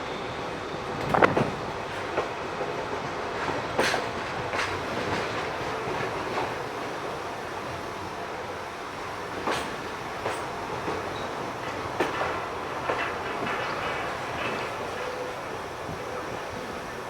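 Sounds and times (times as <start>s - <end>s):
freight train rolling past: 0.0s - 17.0s
wheels clacking over rail joints: 1.0s - 6.7s, 9.2s - 17.0s.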